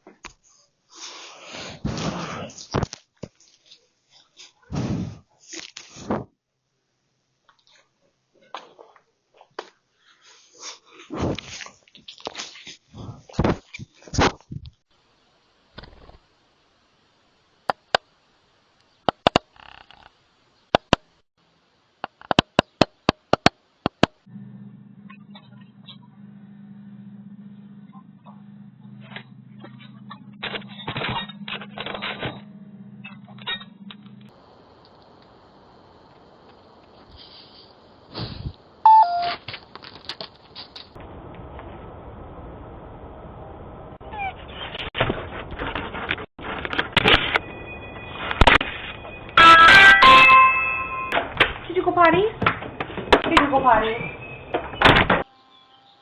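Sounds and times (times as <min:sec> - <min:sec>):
low electrical hum: 0:23.6 - 0:44.0.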